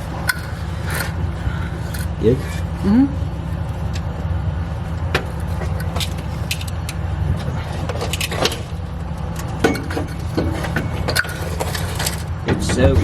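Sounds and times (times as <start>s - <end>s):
steady low rumble: 0.0s - 13.0s
metallic clinks and knocks: 9.4s - 12.3s.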